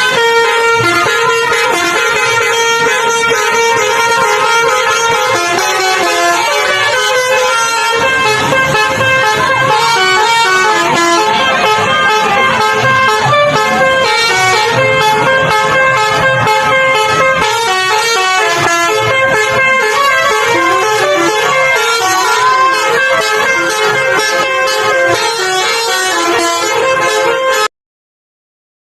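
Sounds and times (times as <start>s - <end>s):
bus horn playing a tune: 0.0s - 27.7s.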